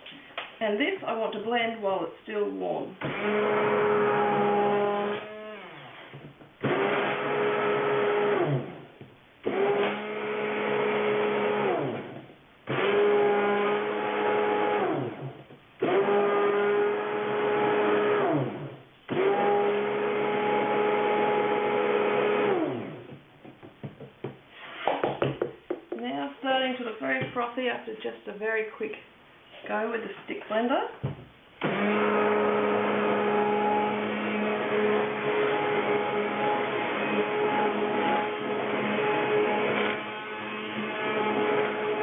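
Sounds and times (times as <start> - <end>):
stick blender whirring: 3.0 - 8.8, 9.4 - 15.2, 15.8 - 23.2, 31.6 - 42.0.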